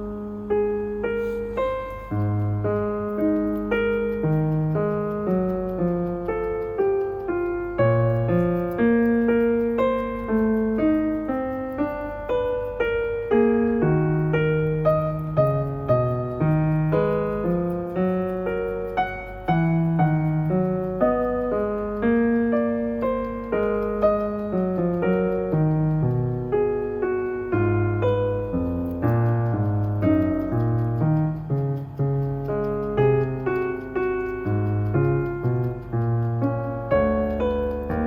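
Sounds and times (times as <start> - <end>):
piano music: 0.0 - 38.0.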